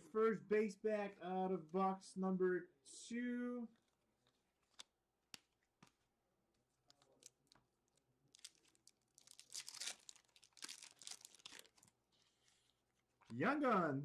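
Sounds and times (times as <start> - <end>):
foil wrapper crinkling and tearing: 6.6 - 13.3.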